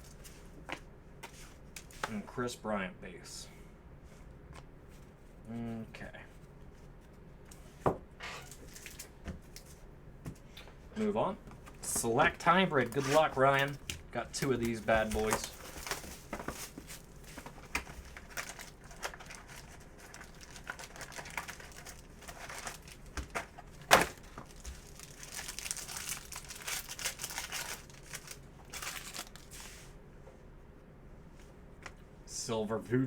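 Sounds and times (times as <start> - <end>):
plastic wrapping crinkling and tearing: 8.4 - 9.7, 12.4 - 29.7.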